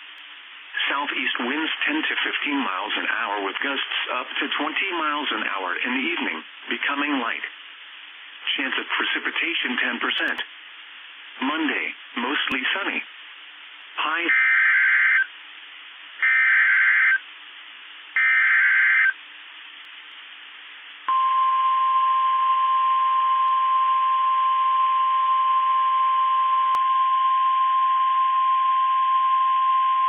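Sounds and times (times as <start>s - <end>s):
steady warning alarm tone: 14.3s - 15.3s, 16.2s - 17.2s, 18.2s - 19.2s
screeching data bursts: 16.2s - 17.2s, 18.2s - 19.2s.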